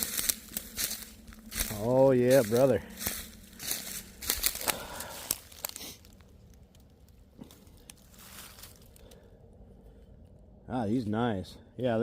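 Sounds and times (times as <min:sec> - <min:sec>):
dry leaves crunching and rustling: 0:00.0 - 0:09.2.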